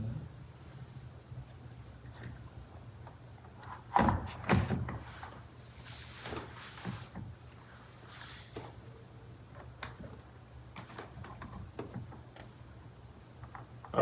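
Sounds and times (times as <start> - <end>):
low steady hum: 0.0 - 14.0
rustling scrapes: 5.0 - 8.9.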